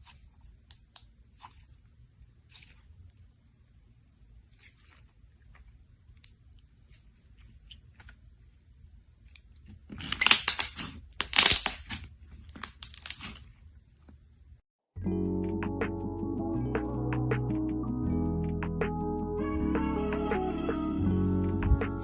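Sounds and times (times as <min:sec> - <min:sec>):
dry crackling and tearing: 0:09.2 - 0:14.2
music: 0:15.0 - 0:22.0.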